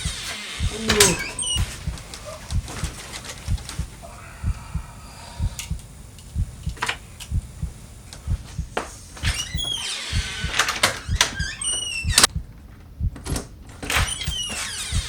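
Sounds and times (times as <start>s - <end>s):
heartbeat thumping: 0.0s - 15.0s
sharp clicks: 5.4s - 8.5s, 9.2s - 12.4s.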